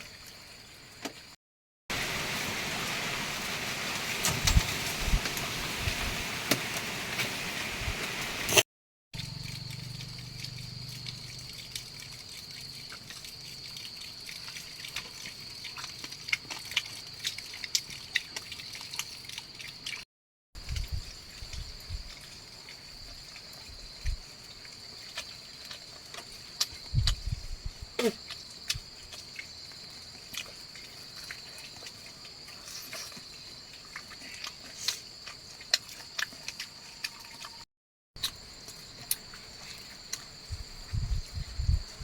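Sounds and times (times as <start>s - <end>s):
high-pitched insect chorus: 9.2s - 20.0s, 20.6s - 37.6s, 38.2s - 42.0s.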